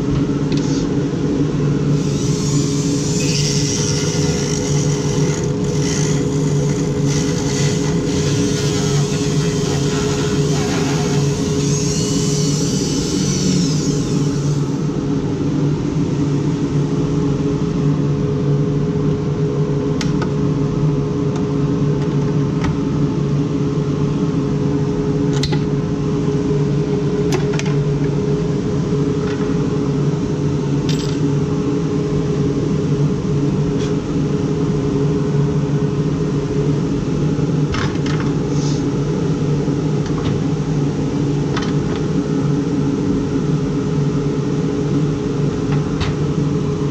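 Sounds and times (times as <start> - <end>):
electric motor humming: 1.9 - 15.0.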